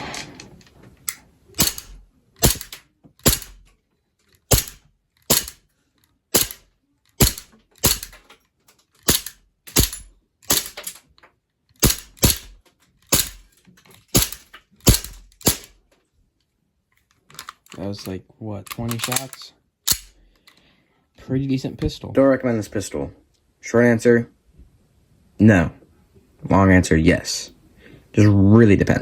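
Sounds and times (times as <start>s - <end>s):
pistol shots cracking: 1.6s - 3.6s, 4.5s - 5.6s, 6.3s - 6.6s, 7.2s - 8.2s, 9.0s - 10.8s, 11.8s - 13.4s, 14.1s - 15.7s.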